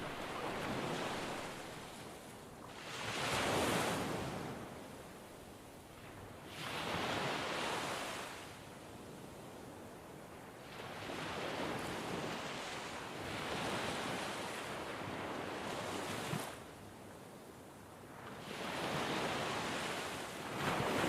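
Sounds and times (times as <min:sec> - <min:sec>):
ocean surf washing onto beach: 0:00.0 - 0:02.0, 0:19.1 - 0:21.0.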